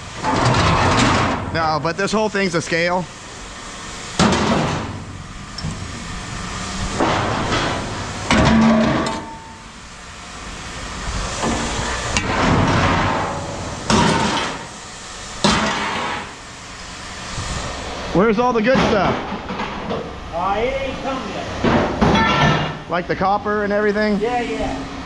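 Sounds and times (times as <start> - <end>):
scrap metal crashing onto pile: 0.2 - 1.8, 6.9 - 9.8, 11.3 - 14.8, 21.6 - 22.9.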